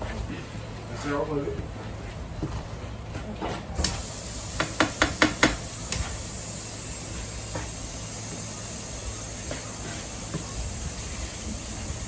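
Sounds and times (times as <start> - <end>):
utensil knocking against pan: 4.6 - 5.6.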